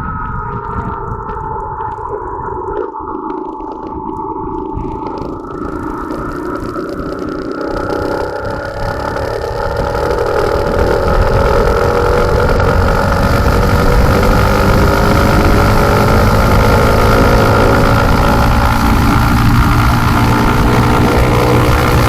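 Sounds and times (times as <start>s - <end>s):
motorcycle engine accelerating: 4.6s - 22.0s.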